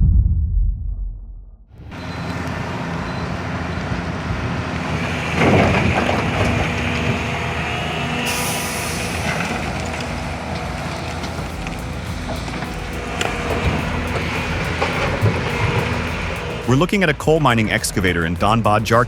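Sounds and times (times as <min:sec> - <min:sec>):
excavator diesel engine running: 0:01.8 - 0:19.0
high hiss: 0:08.3 - 0:09.5.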